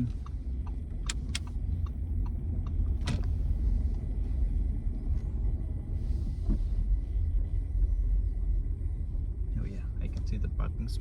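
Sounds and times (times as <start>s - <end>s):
car cabin engine and tyre rumble: 0.0s - 11.0s
sharp clicks: 1.0s - 1.5s.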